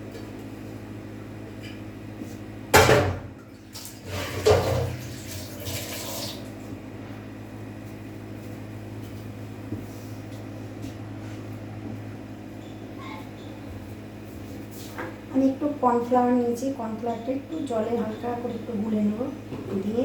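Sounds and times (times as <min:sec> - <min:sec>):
steady low hum: 0:00.0 - 0:20.0
liquid pouring or splashing: 0:03.5 - 0:06.5.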